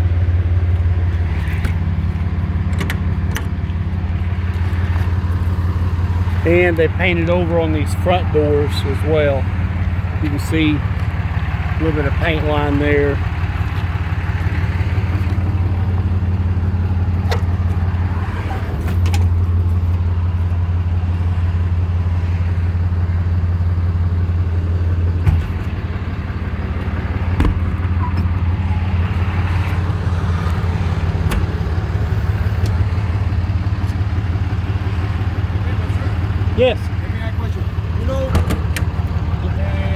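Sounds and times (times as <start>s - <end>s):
truck engine idling: 0.0s - 39.9s
light clicks and knocks: 0.8s - 3.9s.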